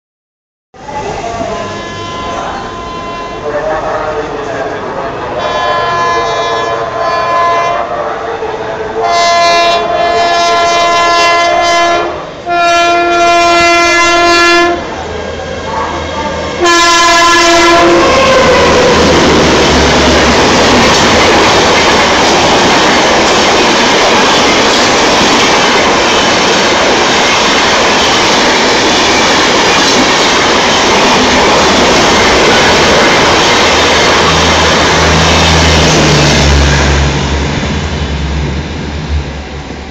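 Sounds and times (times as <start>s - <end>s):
locomotive horn blasts: 1.3s - 4.2s, 5.3s - 8.1s, 9.0s - 14.8s, 15.7s - 18.7s
train wheels clattering on rails: 19.3s - 36.2s.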